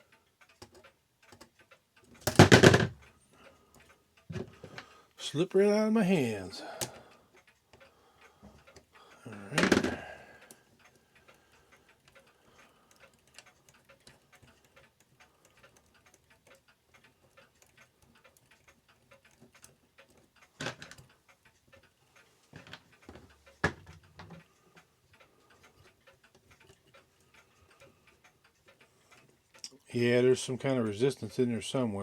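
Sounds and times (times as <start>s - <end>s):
mechanical clock ticking: 0.0s - 32.0s
metal clock parts knocking: 2.2s - 3.0s, 9.5s - 10.1s, 20.6s - 21.1s.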